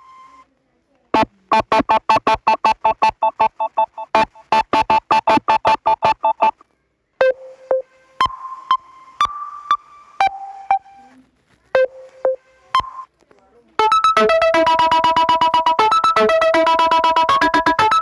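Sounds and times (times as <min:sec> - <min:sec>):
fast synthesized keyboard notes: 0:01.2 - 0:06.6, 0:13.8 - 0:18.0.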